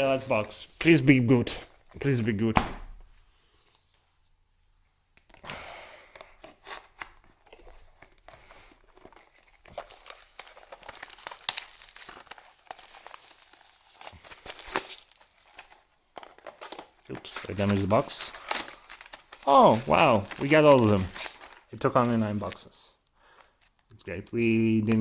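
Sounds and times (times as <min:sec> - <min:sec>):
cardboard and plastic tearing: 0:06.2 - 0:22.6
wrap crinkling and rustling: 0:06.2 - 0:23.9.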